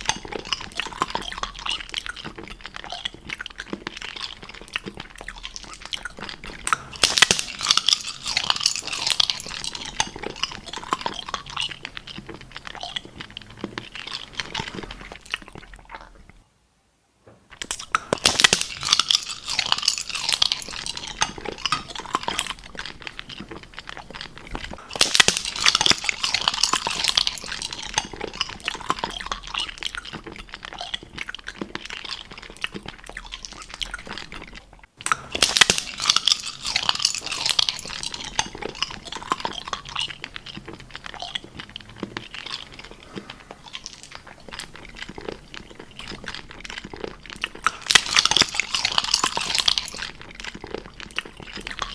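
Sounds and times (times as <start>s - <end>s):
crunchy chewing: 0.0s - 16.4s, 17.5s - 51.9s.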